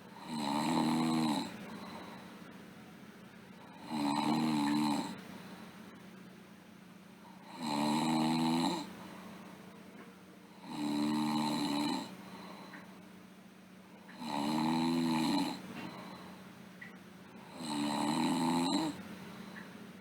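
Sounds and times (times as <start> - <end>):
girl snoring: 0.2 - 2.0, 3.7 - 5.2, 7.3 - 9.0, 10.6 - 12.2, 14.1 - 16.1, 17.4 - 19.0.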